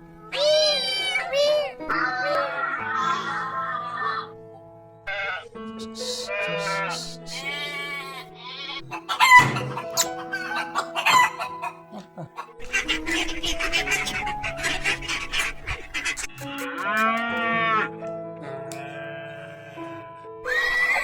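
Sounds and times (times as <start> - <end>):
background music: 0.0 - 21.0
rooster crowing: 8.9 - 13.1.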